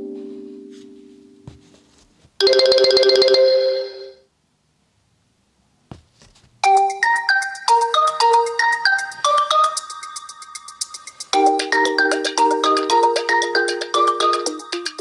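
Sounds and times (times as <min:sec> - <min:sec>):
ringtone melody of short notes: 0:02.4 - 0:04.2, 0:06.6 - 0:15.0.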